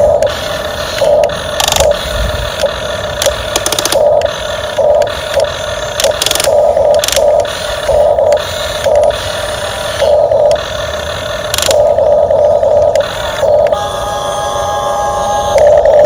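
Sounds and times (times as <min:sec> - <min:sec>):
light mechanical clicking: 0:00.0 - 0:09.2, 0:11.5 - 0:12.0
electric motors whining: 0:00.0 - 0:16.0.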